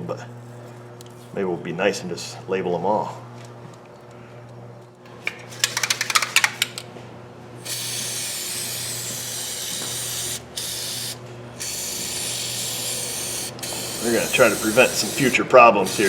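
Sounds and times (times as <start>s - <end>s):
quick clicks: 5.3s - 6.9s
aerosol spray hissing: 7.7s - 16.0s.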